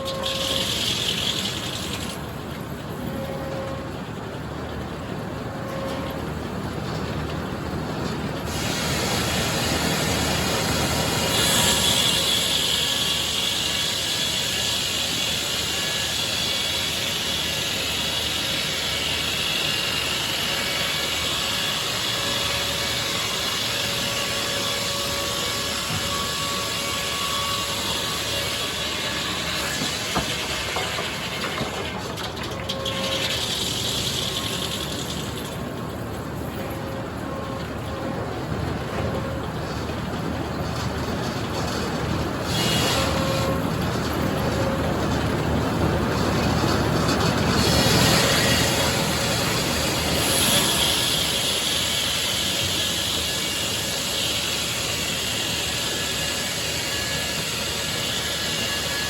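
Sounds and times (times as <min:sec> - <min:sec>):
saw cutting through log: 0:08.5 - 0:31.9, 0:42.4 - 0:43.7, 0:47.5 - 0:59.0.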